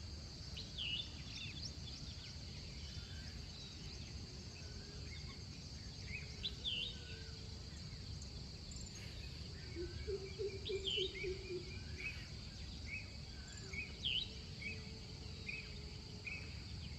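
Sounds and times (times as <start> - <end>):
high insect drone: 0.0 - 16.9.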